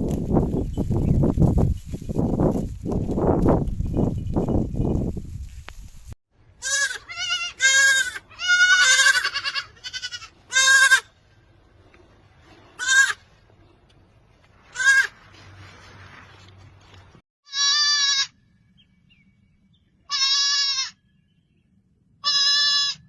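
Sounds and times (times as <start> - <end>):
goats bleating: 6.6 - 11.1, 12.8 - 13.2, 17.5 - 18.3, 20.1 - 21.0, 22.2 - 23.0.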